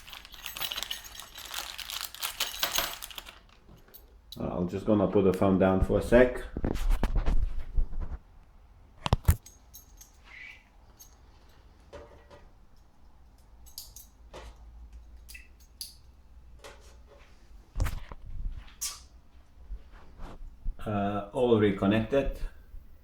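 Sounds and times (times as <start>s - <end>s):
small metal parts clicking: 0.0s - 4.4s, 9.4s - 11.6s, 12.8s - 14.3s.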